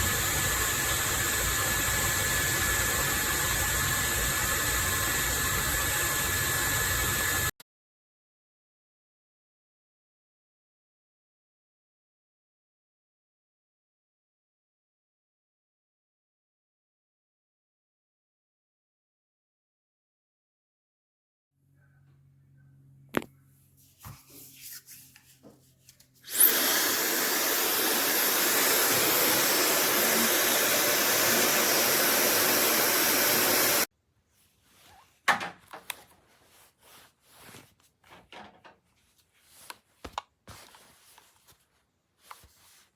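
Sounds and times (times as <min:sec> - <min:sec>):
hair dryer whining and blowing: 0:00.0 - 0:07.5, 0:26.3 - 0:33.9.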